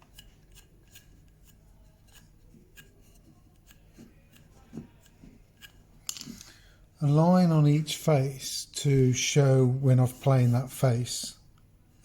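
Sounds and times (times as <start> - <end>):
pencil scratching on wood: 0.0 - 5.9.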